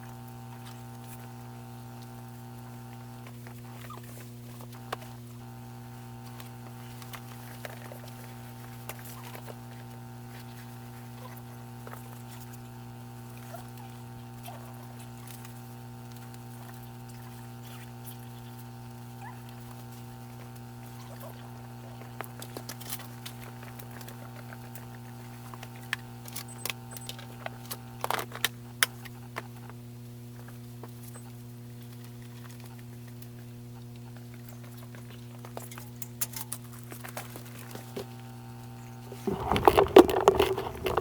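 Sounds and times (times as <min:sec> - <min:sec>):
steady low hum: 0:00.0 - 0:28.8
handling clicks and rustles: 0:39.2 - 0:41.0.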